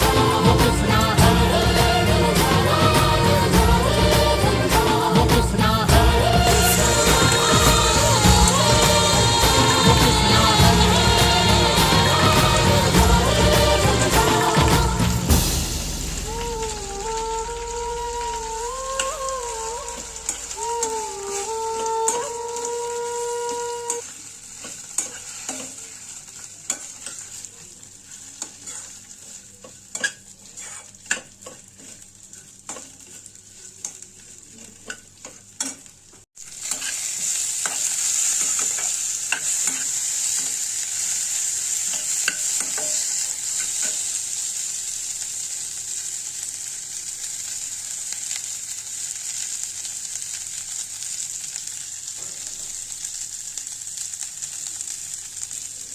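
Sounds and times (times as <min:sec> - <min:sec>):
held pitched tone: 0:00.0 - 0:24.0
food sizzling in a frying pan: 0:00.0 - 0:55.9
spatula scraping a pan: 0:23.9 - 0:35.9, 0:36.5 - 0:44.1.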